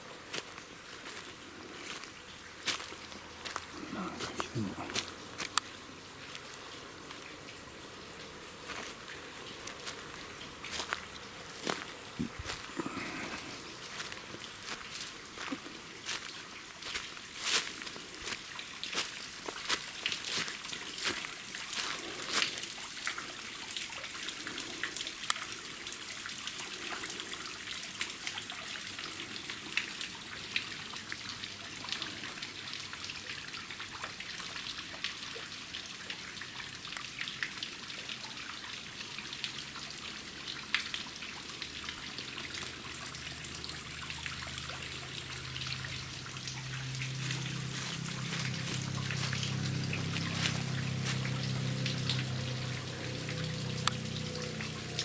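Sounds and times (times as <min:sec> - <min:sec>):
water drips and splashes: 0:00.1 - 0:55.0
waterfall rushing: 0:43.4 - 0:55.0
low rumble: 0:45.9 - 0:53.9.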